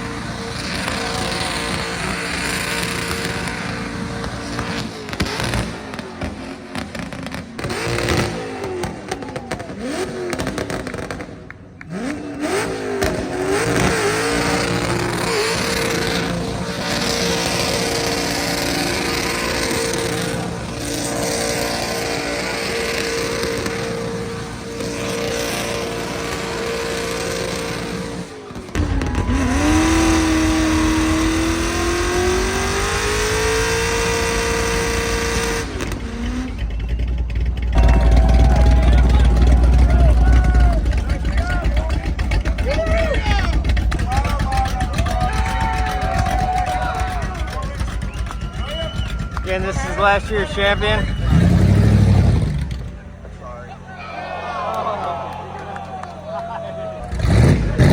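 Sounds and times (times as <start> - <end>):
car engine revving hard: 0.0 - 53.4, 57.0 - 57.9
deeper engine revving up: 0.0 - 57.9
spinning tyres hissing: 12.0 - 55.0.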